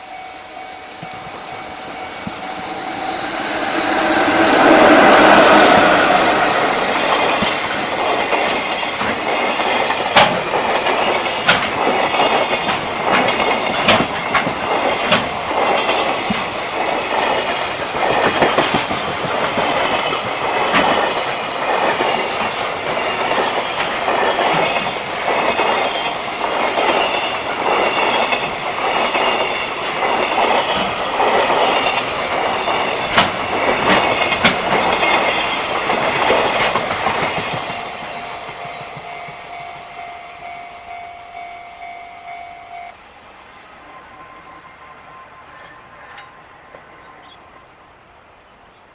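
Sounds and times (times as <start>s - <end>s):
train wheels clacking over rail joints: 1.0s - 40.0s.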